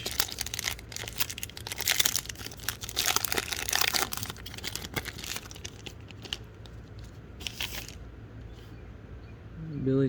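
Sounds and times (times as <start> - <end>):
plastic wrapper tearing and crinkling: 0.0 - 8.0.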